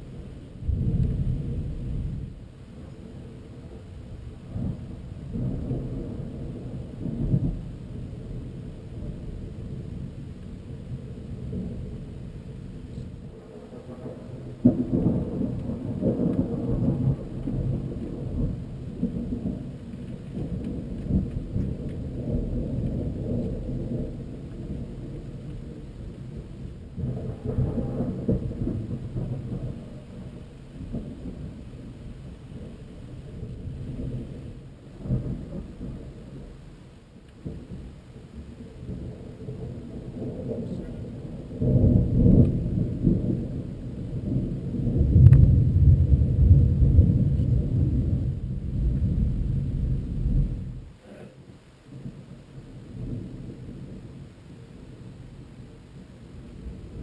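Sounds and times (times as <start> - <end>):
thunder rumbling: 0.0 - 57.0
loud thunder clap: 13.5 - 25.8, 27.0 - 31.6, 38.8 - 50.8.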